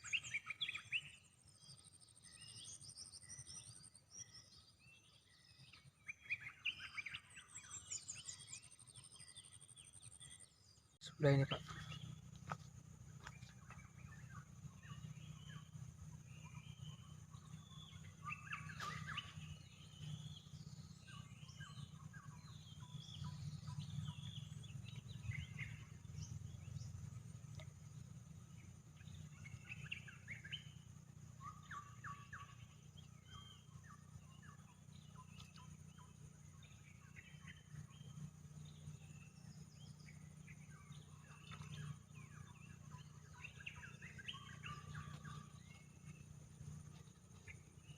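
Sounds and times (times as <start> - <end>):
birds chirping: 0.0 - 47.9
steady low hum: 0.0 - 47.9.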